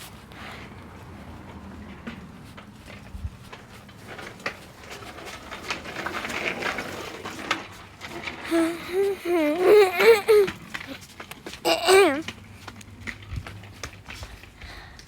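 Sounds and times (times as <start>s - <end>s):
young child whining: 8.5s - 11.0s, 11.6s - 12.3s.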